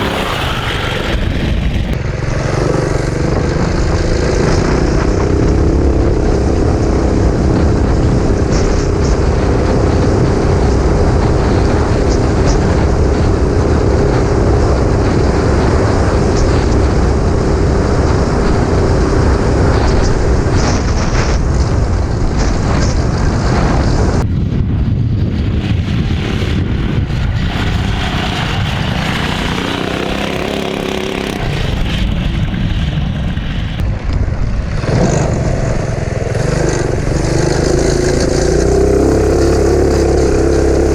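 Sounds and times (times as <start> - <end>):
small engine droning under load: 0.0 - 20.4, 24.9 - 33.8.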